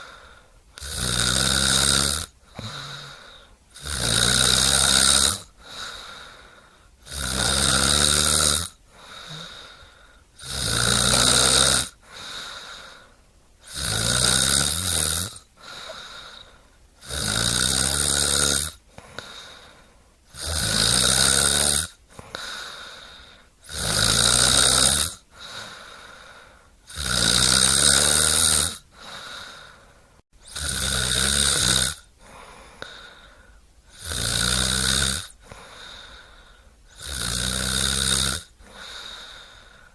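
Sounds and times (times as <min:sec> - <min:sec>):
quiet breath out: 0:00.0 - 0:00.7, 0:02.4 - 0:03.6, 0:05.5 - 0:07.0, 0:08.9 - 0:10.4, 0:12.0 - 0:13.3, 0:15.6 - 0:16.9, 0:18.9 - 0:20.2, 0:22.1 - 0:23.6, 0:25.3 - 0:26.8, 0:28.9 - 0:30.2, 0:32.2 - 0:33.7, 0:35.4 - 0:36.9, 0:38.6 - 0:39.9
loud snoring: 0:00.0 - 0:06.4, 0:07.0 - 0:19.7, 0:20.3 - 0:29.8, 0:30.4 - 0:33.2, 0:33.9 - 0:36.1, 0:36.9 - 0:39.7.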